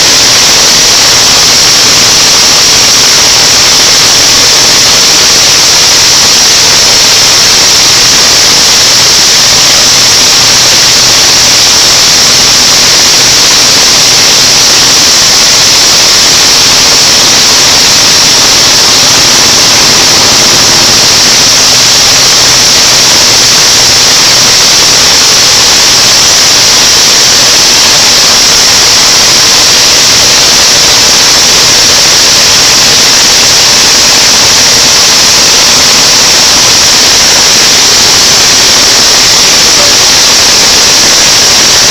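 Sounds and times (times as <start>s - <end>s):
blower rushing hiss: 0.0s - 41.9s.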